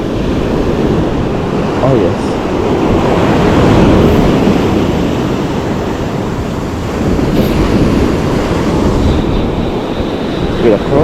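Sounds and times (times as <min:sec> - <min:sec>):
ocean surf washing: 0:00.0 - 0:11.0
wind buffeting microphone: 0:00.0 - 0:11.0.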